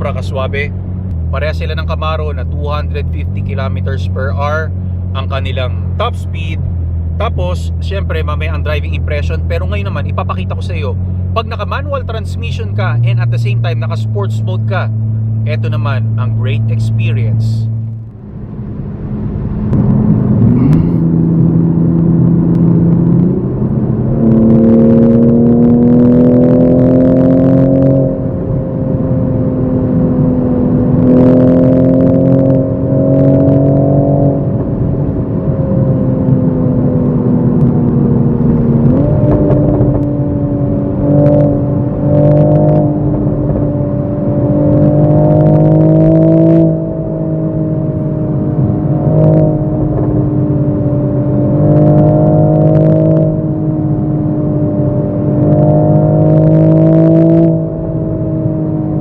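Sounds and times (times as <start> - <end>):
car engine heard from cabin: 0.0 - 59.0.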